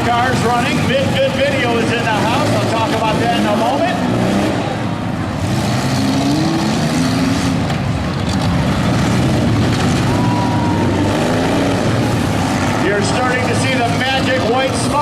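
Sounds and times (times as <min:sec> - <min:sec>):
car engines revving: 0:00.0 - 0:15.0.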